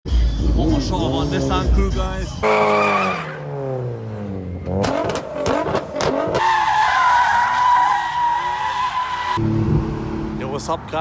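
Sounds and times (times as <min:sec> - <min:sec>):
tyre squeal: 0:02.4 - 0:03.6
car engine revving with pops: 0:02.5 - 0:06.7.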